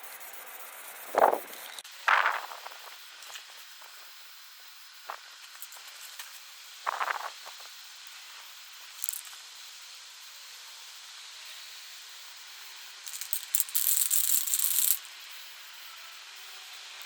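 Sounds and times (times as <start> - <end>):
spray paint hissing: 0.0 - 9.7, 13.0 - 15.4.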